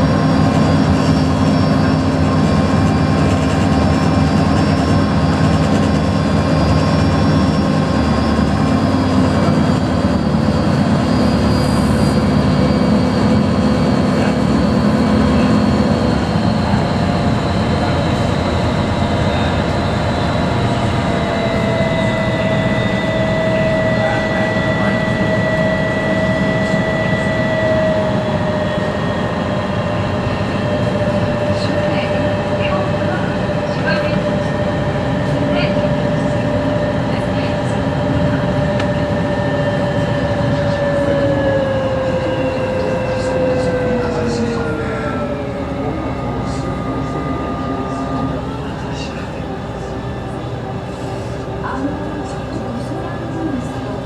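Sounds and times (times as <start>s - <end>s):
ferry engine hum: 0.0s - 54.0s
thin whine: 38.8s - 54.0s.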